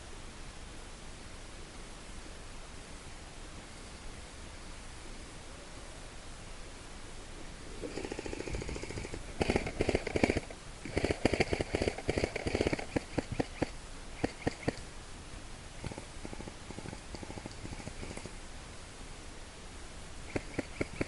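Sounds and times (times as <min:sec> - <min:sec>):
airsoft guns firing: 0:07.8 - 0:14.8, 0:20.3 - 0:21.0.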